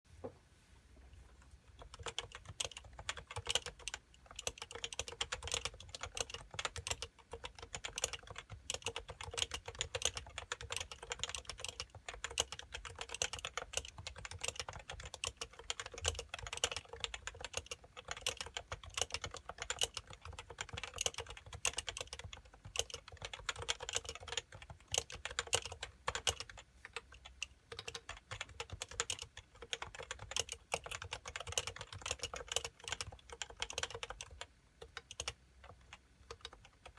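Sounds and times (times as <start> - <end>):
fast keyboard typing: 1.8 - 36.9.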